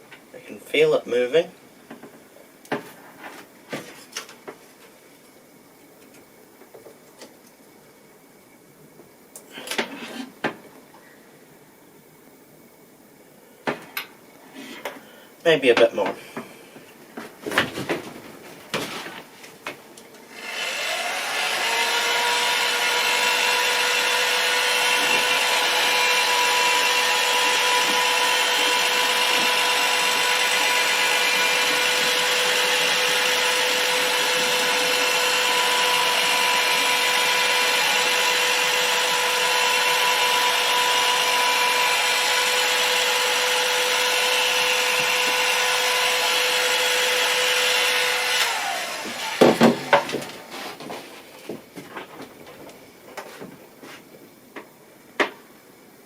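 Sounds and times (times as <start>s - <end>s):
heat gun fan blowing: 20.0s - 50.5s.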